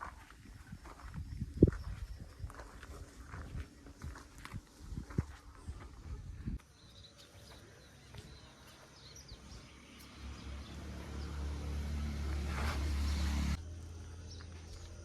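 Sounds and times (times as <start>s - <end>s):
bird chirps: 6.6s - 11.4s
diesel engine rumble: 9.1s - 15.0s.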